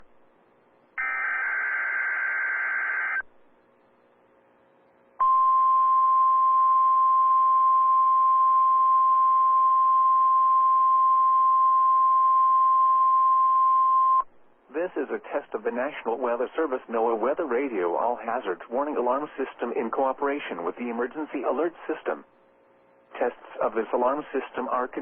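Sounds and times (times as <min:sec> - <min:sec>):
steady warning alarm tone: 0:01.0 - 0:03.2
warbling digital data tones: 0:01.0 - 0:03.2.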